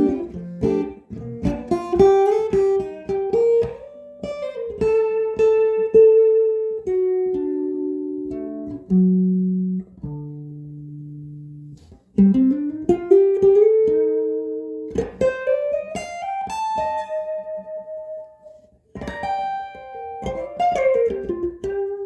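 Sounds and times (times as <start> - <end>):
electric guitar single-note line: 0.0 - 1.7, 19.0 - 22.0.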